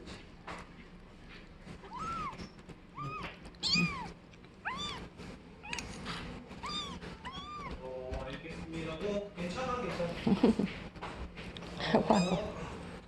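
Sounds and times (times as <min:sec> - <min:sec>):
kittens mewing: 0:01.8 - 0:05.9, 0:06.5 - 0:07.8, 0:11.8 - 0:12.6.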